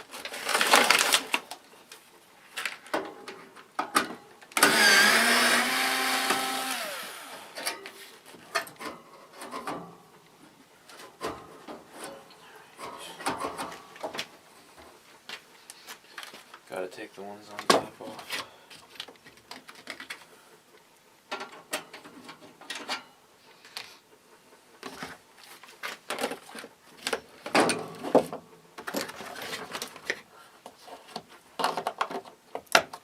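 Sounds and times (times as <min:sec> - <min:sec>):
power driver motor whirring: 0:04.6 - 0:07.6
clicks and knocks of tools on metal: 0:21.3 - 0:23.2.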